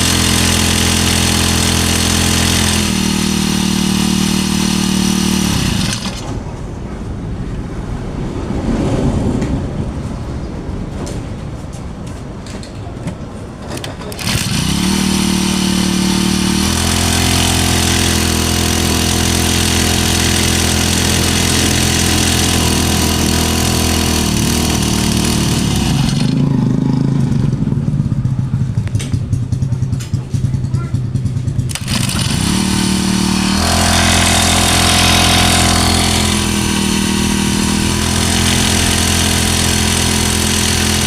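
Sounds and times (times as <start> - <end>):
small sprayer engine revving: 0.0 - 6.3, 14.1 - 27.2, 31.6 - 41.0.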